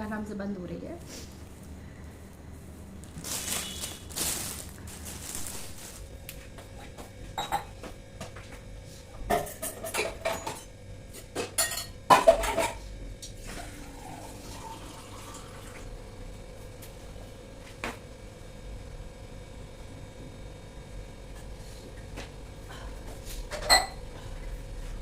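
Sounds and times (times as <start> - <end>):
dishes and utensils clattering: 7.3 - 7.8, 9.3 - 10.7, 11.4 - 12.8, 23.5 - 24.0.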